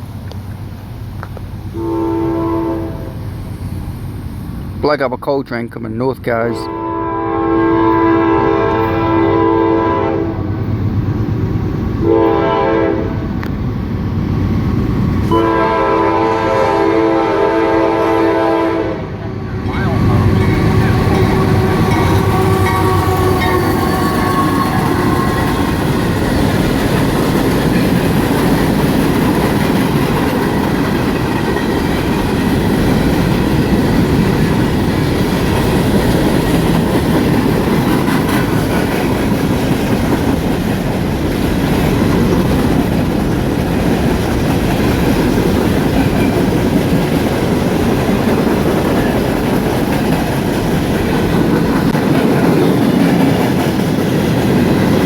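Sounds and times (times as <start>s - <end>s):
train cars rolling on rails: 0.0s - 55.0s
locomotive horn: 1.8s - 3.2s, 6.5s - 10.6s, 12.0s - 13.4s, 15.3s - 26.0s.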